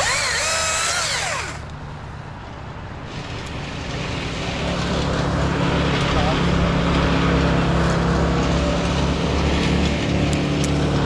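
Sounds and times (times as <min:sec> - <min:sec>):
small engine revving: 0:00.0 - 0:01.7
low engine rumble: 0:00.0 - 0:11.0.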